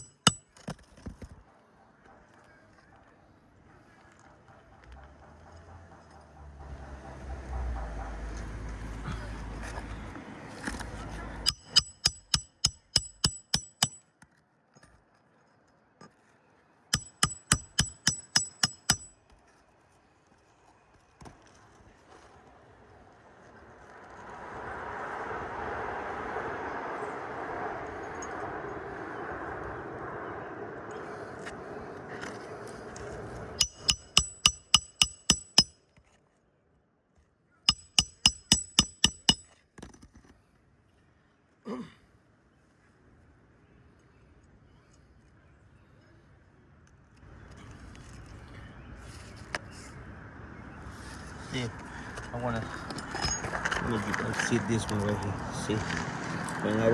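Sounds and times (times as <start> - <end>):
hammer striking roofing nails: 0.0 - 0.8, 11.4 - 14.0, 17.0 - 19.1, 33.6 - 35.8, 37.7 - 39.4.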